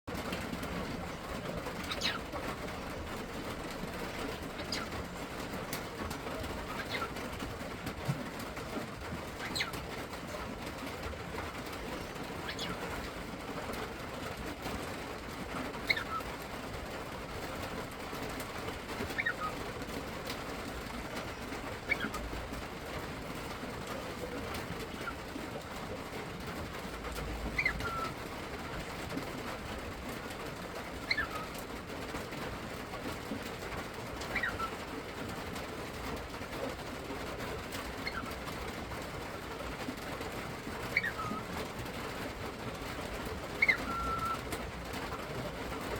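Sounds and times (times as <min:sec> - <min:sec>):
cockatiel calling: 0:01.7 - 0:02.5, 0:04.5 - 0:05.0, 0:06.4 - 0:07.2, 0:09.3 - 0:09.9, 0:12.4 - 0:12.8, 0:15.6 - 0:16.3, 0:19.1 - 0:19.6, 0:21.3 - 0:22.2, 0:27.5 - 0:28.2, 0:31.0 - 0:31.6, 0:34.2 - 0:34.8, 0:38.0 - 0:38.4, 0:40.9 - 0:41.5, 0:43.6 - 0:44.6.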